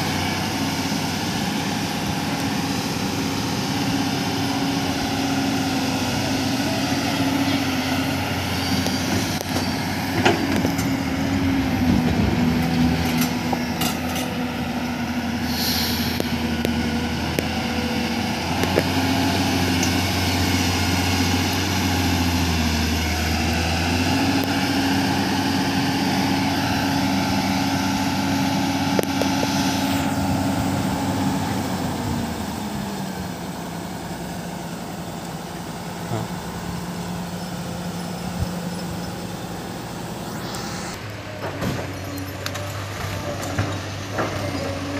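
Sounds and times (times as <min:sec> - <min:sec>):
heavy diesel engines running: 0:00.0 - 0:44.9
short hiss: 0:15.5 - 0:16.4.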